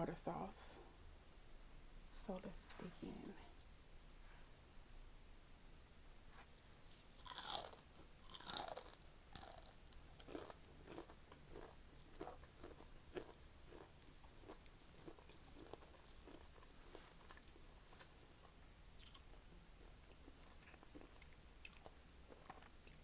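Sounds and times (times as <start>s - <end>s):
person crunching and chewing food: 6.3s - 23.0s.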